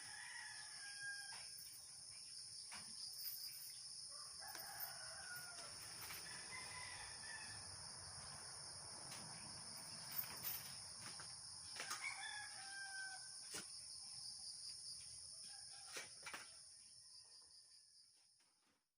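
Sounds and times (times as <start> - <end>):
rooster crowing: 0.0 - 1.5, 4.1 - 8.0, 11.8 - 13.4
insects chorus: 0.0 - 18.2.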